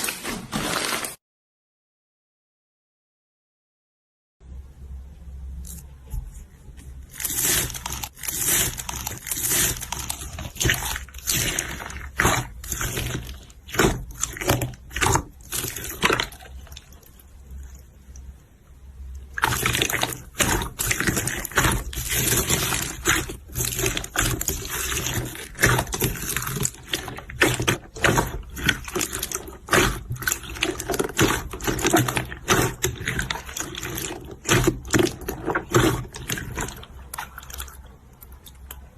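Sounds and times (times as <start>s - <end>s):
slime squelching by hand: 5.6s - 18.3s, 19.1s - 38.9s.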